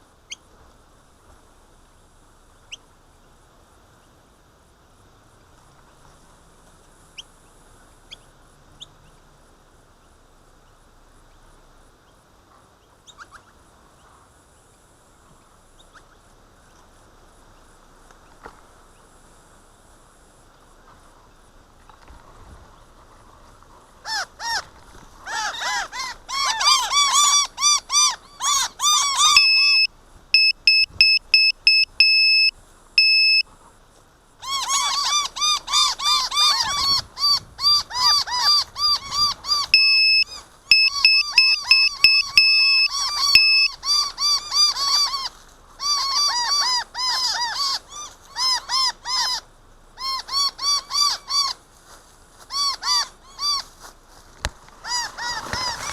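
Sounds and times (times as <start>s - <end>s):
faint background hiss: 0.0s - 55.9s
birds scolding calls: 23.9s - 33.4s, 34.4s - 51.7s, 52.5s - 53.7s, 54.8s - 55.9s
short electronic beeps: 29.3s - 33.5s, 39.7s - 43.8s.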